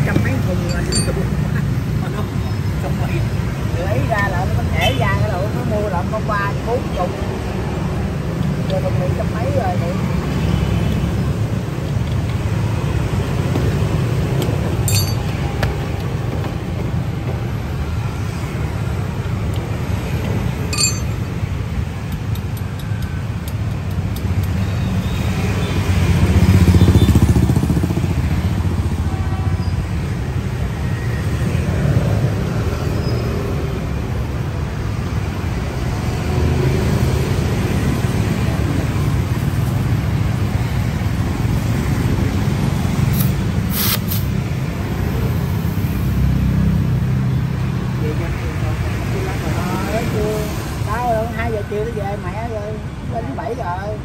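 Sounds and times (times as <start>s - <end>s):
traffic rumble: 0.0s - 54.0s.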